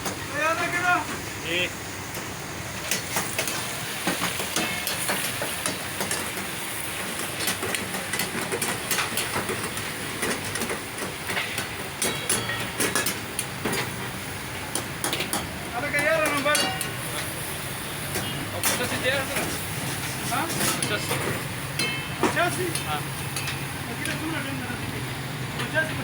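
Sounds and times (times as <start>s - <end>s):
food sizzling over high heat: 0.0s - 26.0s
metal clinks and clanks: 11.3s - 13.2s.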